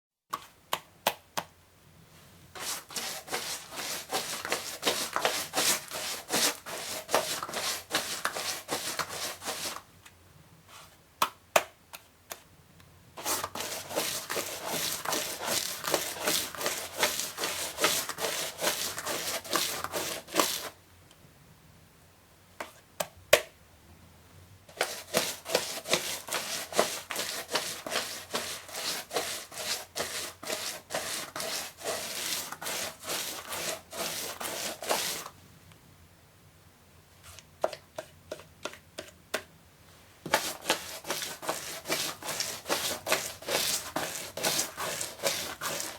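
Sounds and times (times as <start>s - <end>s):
rapid rubbing strokes: 2.6s - 9.8s, 13.2s - 20.7s, 24.7s - 35.3s, 40.3s - 45.9s.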